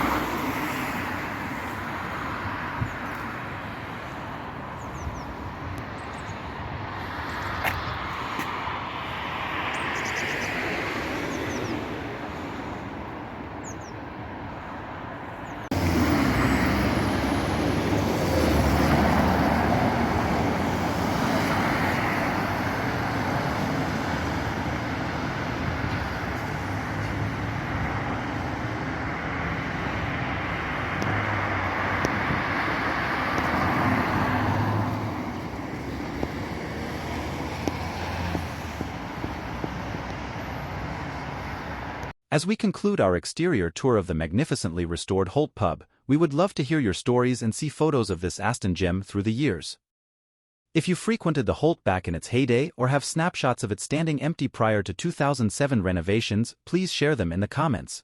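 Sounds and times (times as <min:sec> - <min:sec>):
road traffic passing: 0:00.0 - 0:42.2.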